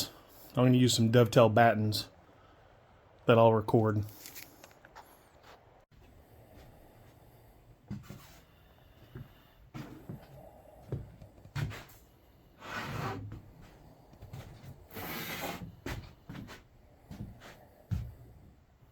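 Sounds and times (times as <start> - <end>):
scraping sounds: 14.6 - 16.6.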